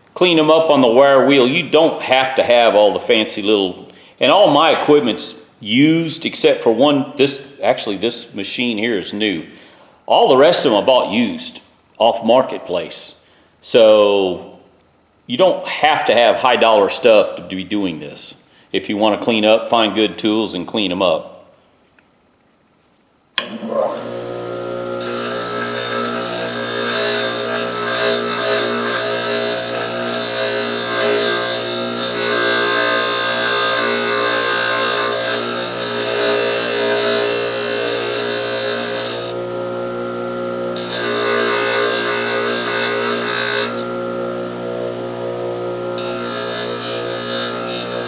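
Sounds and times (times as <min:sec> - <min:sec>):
polishing machine motor hum: 0:23.4 - 0:48.0.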